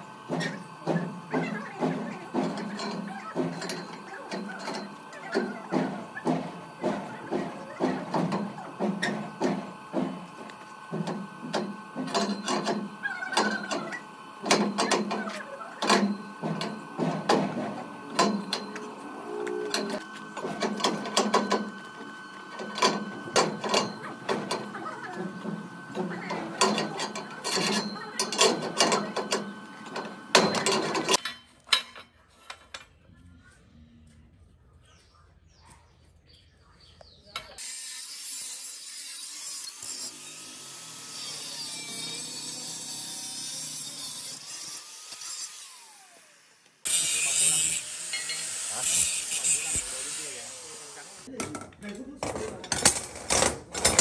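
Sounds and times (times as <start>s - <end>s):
machine humming: 0.0s - 31.2s.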